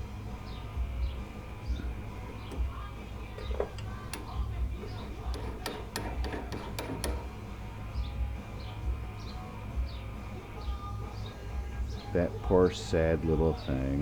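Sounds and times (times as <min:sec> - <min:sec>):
drill bit clicking in chuck: 0:01.8 - 0:07.4.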